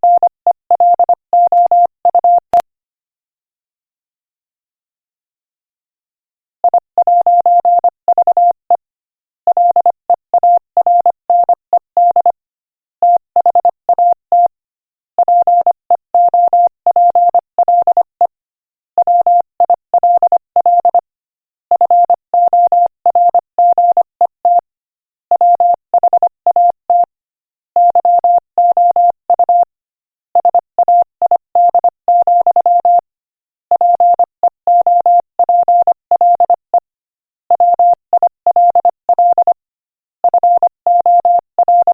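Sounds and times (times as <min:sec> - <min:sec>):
morse code tone: 0:37.5 - 0:39.6, 0:40.2 - 0:41.9.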